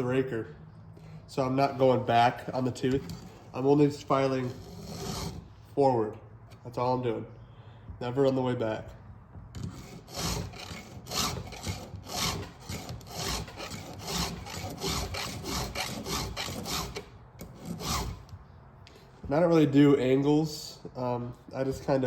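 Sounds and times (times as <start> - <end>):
file rasping on saw chain: 2.9 - 5.5, 9.6 - 18.3.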